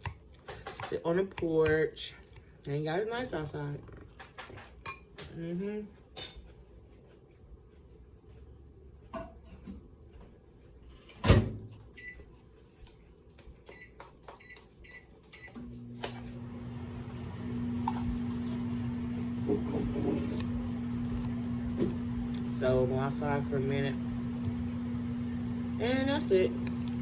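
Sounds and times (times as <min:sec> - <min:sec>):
microwave oven humming: 0:14.9 - 0:27.0.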